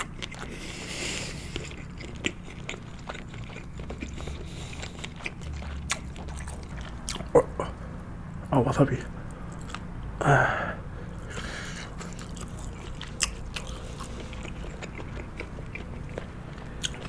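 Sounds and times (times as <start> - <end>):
wet mouth clicks and smacks chewing: 1.5 - 7.4.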